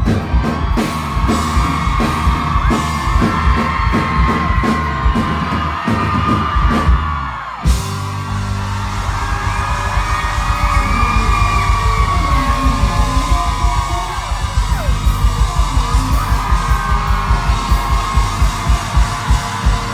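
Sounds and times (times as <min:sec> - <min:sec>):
crowd screaming and cheering: 0:00.0 - 0:19.9
fast drum beat: 0:00.0 - 0:19.9
live rock band playing: 0:00.0 - 0:19.9.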